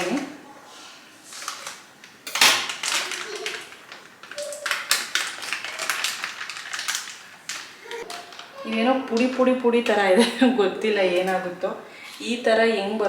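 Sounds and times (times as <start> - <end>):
packet crinkling and tapping: 1.4 - 10.0.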